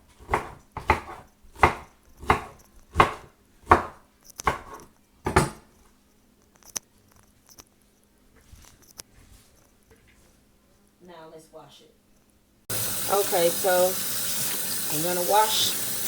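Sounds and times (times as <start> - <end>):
knife slicing cabbage on board: 0.0 - 5.7.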